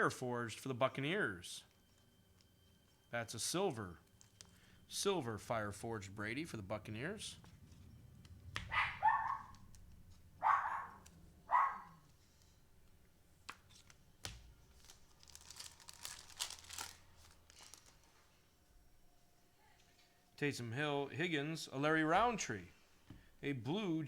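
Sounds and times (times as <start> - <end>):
dog barking: 8.7 - 9.6, 10.4 - 12.0
wrapper tearing and crinkling: 13.7 - 18.2.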